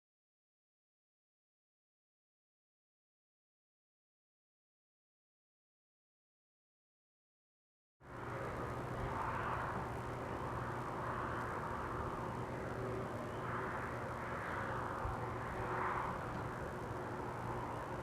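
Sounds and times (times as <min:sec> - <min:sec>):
constant low hum: 0:08.0 - 0:18.0
outdoor rushing noise: 0:08.1 - 0:18.0.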